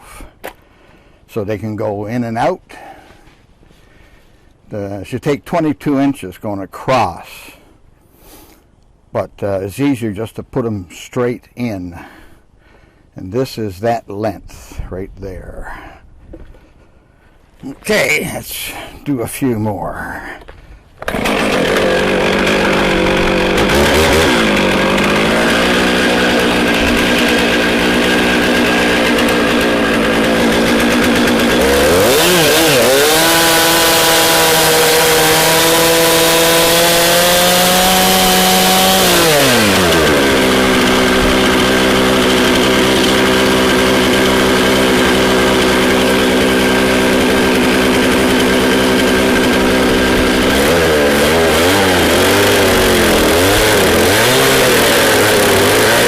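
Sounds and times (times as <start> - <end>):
chainsaw cutting log: 20.6 - 56.0
chainsaw revving: 21.0 - 56.0.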